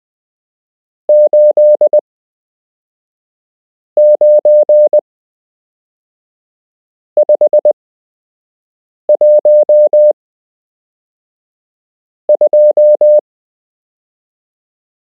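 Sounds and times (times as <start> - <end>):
morse code beeps: 1.1 - 2.0, 4.0 - 5.0, 9.2 - 10.1, 12.3 - 13.2.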